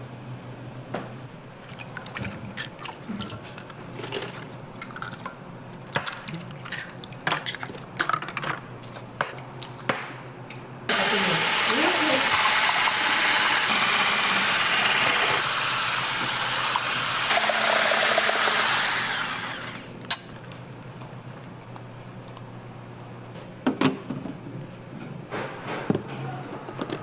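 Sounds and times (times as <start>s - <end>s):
ice-shaving machine rasping: 10.9s - 19.9s.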